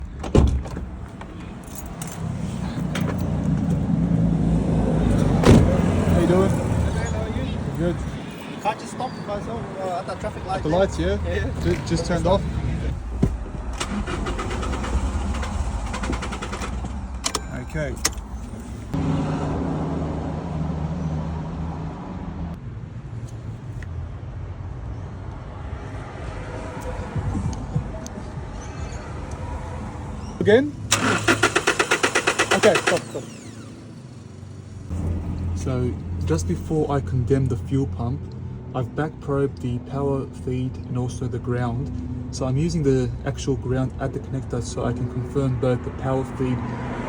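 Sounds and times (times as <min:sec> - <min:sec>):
engine low drone: 0:00.8 - 0:22.6, 0:26.5 - 0:47.0
keys jangling: 0:01.4 - 0:03.9
engine cranking without firing: 0:11.4 - 0:19.0, 0:30.2 - 0:35.1.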